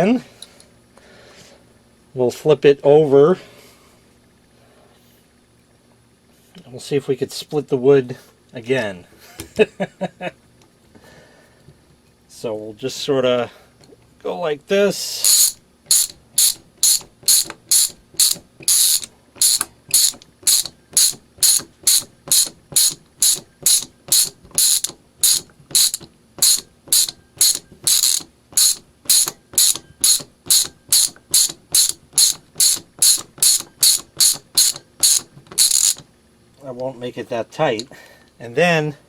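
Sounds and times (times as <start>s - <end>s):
ratcheting screwdriver clicking: 15.2s - 36.0s.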